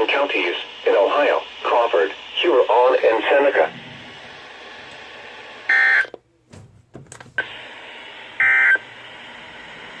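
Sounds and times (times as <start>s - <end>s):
radio static: 0.0s - 4.6s.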